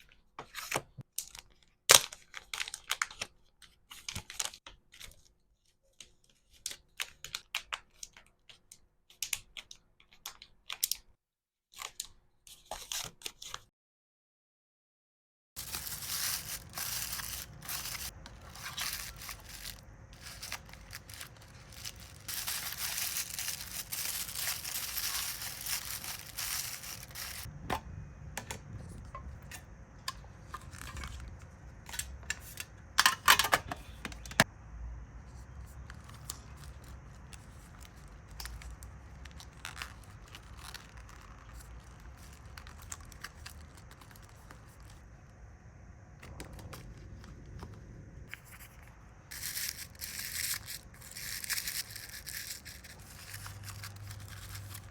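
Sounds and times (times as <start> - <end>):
packaging crinkling and tearing: 0.6 - 5.1, 15.6 - 27.5, 35.8 - 45.1, 48.4 - 54.9.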